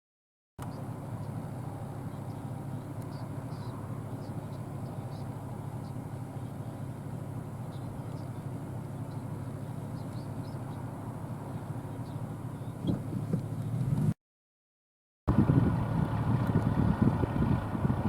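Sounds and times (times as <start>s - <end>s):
diesel engine drone: 0.6s - 14.2s, 15.3s - 18.0s.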